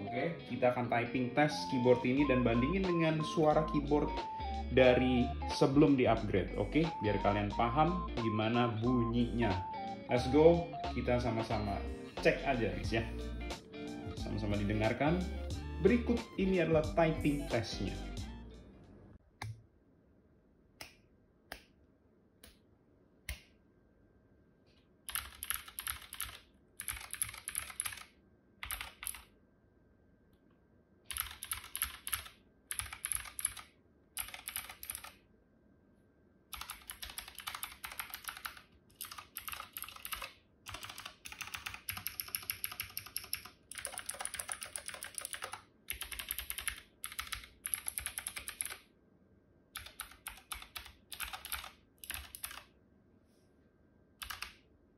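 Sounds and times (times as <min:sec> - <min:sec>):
mechanical keyboard typing: 0:25.1 - 0:29.3, 0:31.1 - 0:35.2, 0:36.5 - 0:48.8, 0:49.8 - 0:52.7, 0:54.2 - 0:54.6.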